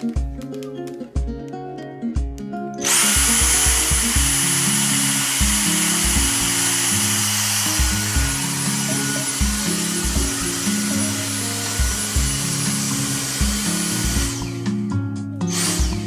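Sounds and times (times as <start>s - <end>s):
background music: 0.0s - 16.0s
vacuum cleaner motor whine: 2.8s - 14.8s, 15.4s - 16.0s.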